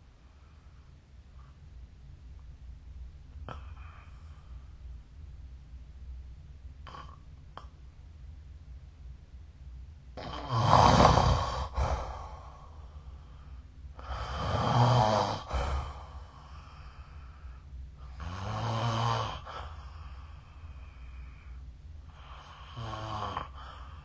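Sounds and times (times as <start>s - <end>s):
person snoring: 10.2s - 12.8s, 14.0s - 16.9s, 18.1s - 19.8s, 22.2s - 24.0s.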